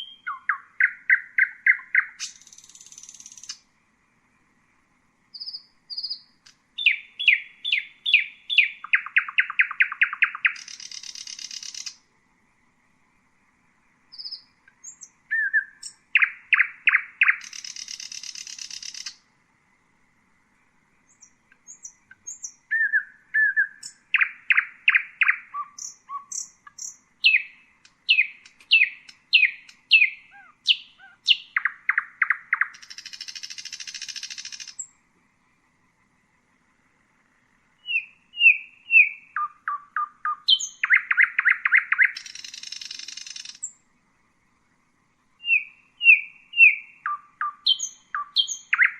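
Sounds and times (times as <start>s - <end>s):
nightingale singing: 0.0s - 4.3s, 5.3s - 12.1s, 13.9s - 19.4s, 20.5s - 35.0s, 37.1s - 43.9s, 45.4s - 48.9s.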